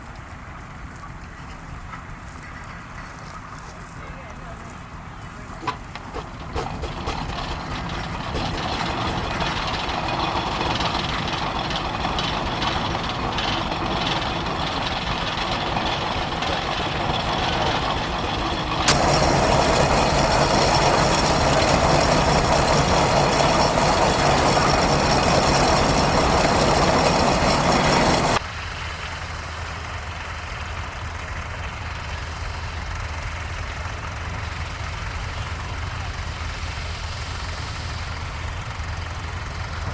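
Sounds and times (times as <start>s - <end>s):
steam engine running: 5.6s - 28.4s.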